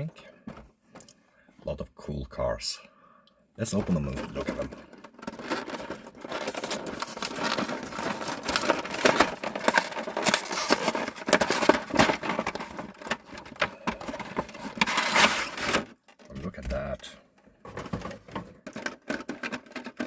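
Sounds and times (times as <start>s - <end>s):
blister packaging being torn open: 5.9s - 13.6s.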